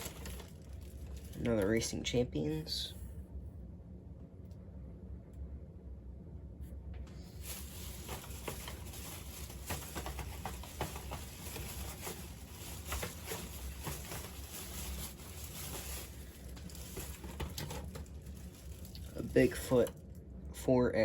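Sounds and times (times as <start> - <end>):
packaging rustling and crinkling: 0.0 - 1.9, 7.2 - 20.2.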